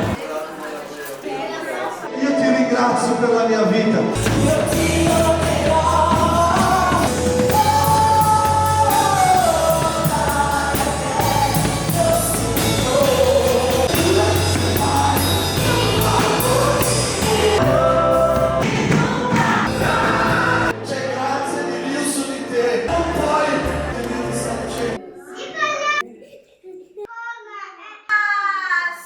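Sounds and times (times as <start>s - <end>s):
congregation singing: 0.0s - 25.6s
band with bass and drums: 4.2s - 20.7s.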